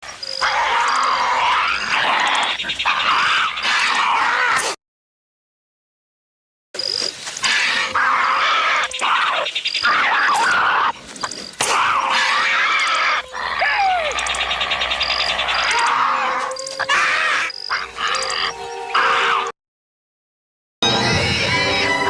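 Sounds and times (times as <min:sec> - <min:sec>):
harsh rasping creature calls: 0:00.2 - 0:04.8, 0:07.4 - 0:19.5.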